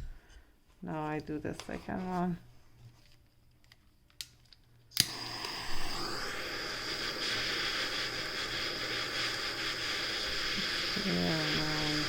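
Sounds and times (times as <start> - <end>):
torch flame hissing: 5.0 - 12.0.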